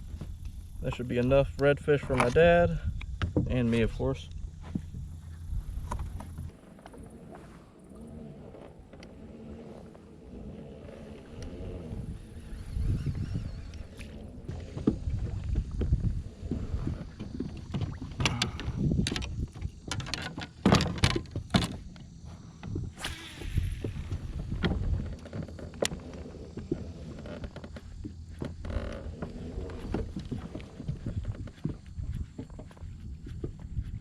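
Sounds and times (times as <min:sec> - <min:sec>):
knocks and clicks against a boat: 0:00.1 - 0:07.0, 0:13.7 - 0:23.0, 0:24.3 - 0:34.0
low rumble: 0:22.8 - 0:25.4.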